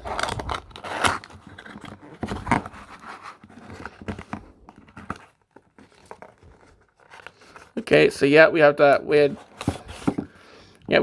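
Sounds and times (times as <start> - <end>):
paper and cardboard rustling: 0.0 - 8.2, 8.8 - 11.0.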